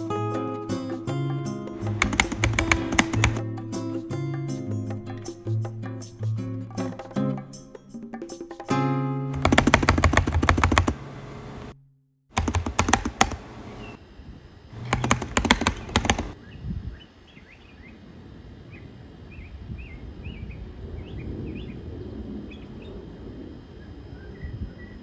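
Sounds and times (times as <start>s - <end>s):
rapid clicking and rattling: 1.9s - 3.5s, 9.4s - 11.0s, 12.4s - 13.5s, 14.8s - 16.4s.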